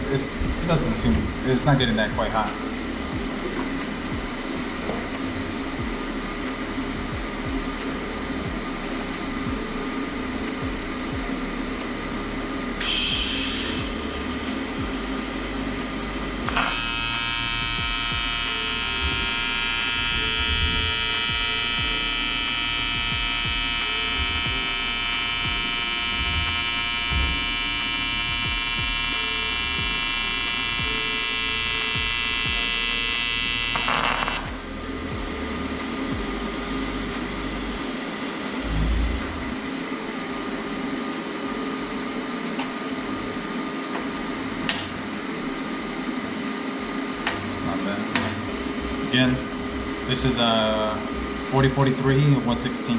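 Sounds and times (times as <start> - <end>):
welding arc buzzing: 0.0 - 39.8
welder low steady hum: 0.0 - 52.9.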